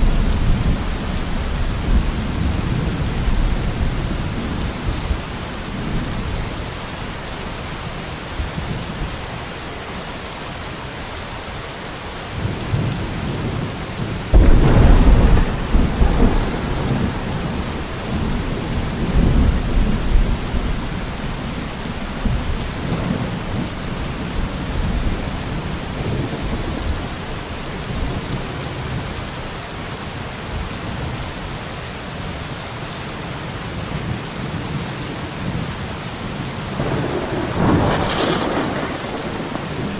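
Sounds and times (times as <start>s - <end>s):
thunder crack and rumble: 0.0s - 6.5s, 12.7s - 28.6s, 36.7s - 39.9s
steady rain hissing: 0.0s - 39.9s.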